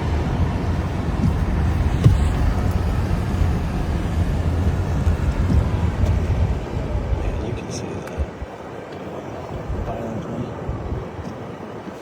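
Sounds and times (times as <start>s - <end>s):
wind buffeting microphone: 0.0s - 12.0s.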